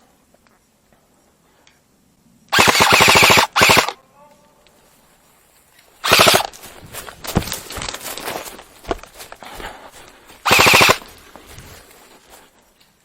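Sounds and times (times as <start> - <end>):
airsoft rifle firing bursts: 2.5 - 4.0, 6.0 - 6.6, 10.4 - 11.1.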